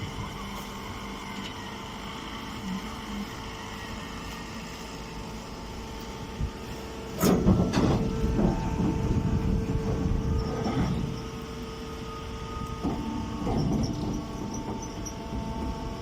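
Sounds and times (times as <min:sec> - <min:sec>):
baler machine humming: 0:00.0 - 0:16.0
machine clanking and clattering: 0:07.2 - 0:11.3, 0:12.8 - 0:15.6.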